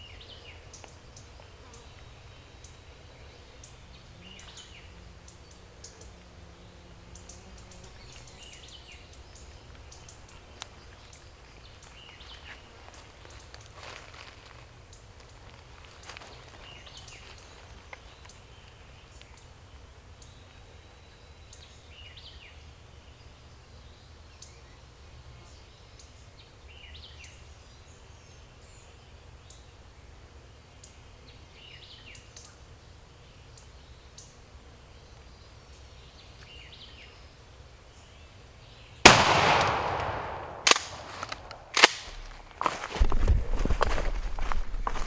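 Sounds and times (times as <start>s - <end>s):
shotgun blast: 39.1s - 42.4s.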